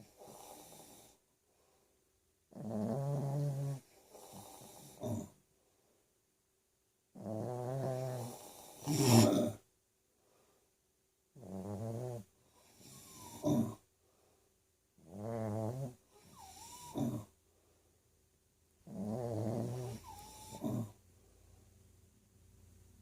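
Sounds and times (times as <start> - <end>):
rattling snore: 2.5 - 5.4, 7.2 - 9.6, 11.4 - 13.8, 15.0 - 17.3, 18.8 - 21.0
short sharp snort: 8.2 - 9.6, 18.9 - 21.0.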